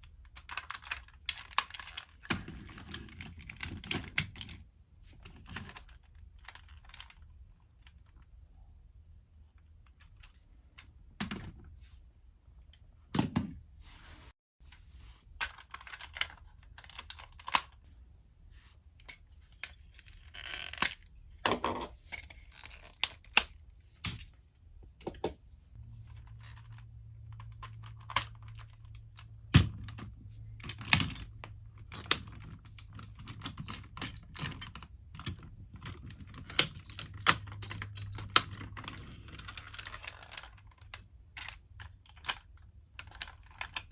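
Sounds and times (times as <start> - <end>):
plastic parts clicking and snapping: 0.2 - 4.6, 5.2 - 8.2, 15.4 - 17.8, 19.0 - 24.4, 26.1 - 43.9.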